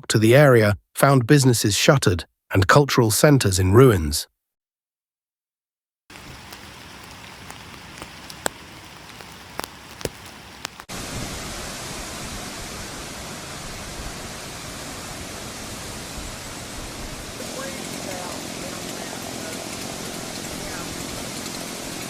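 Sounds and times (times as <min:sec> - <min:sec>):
water rushing hiss: 0:06.1 - 0:22.0
sharp clicks: 0:06.2 - 0:10.9.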